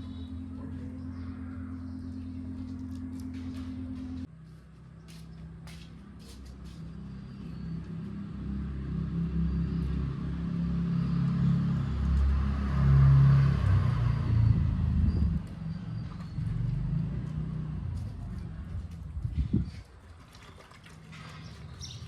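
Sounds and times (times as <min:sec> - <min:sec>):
motorcycle engine rumbling: 0:00.0 - 0:04.3.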